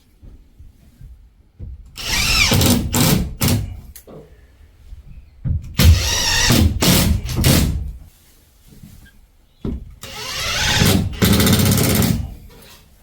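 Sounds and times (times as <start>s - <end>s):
cordless drill whining: 2.0s - 3.1s, 5.8s - 7.8s, 10.0s - 12.2s.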